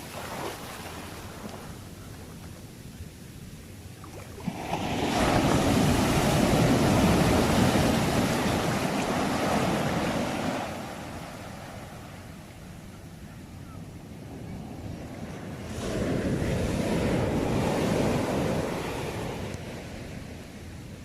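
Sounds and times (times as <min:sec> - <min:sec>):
ocean wave breaking on shore: 0:04.1 - 0:12.4, 0:15.2 - 0:20.5.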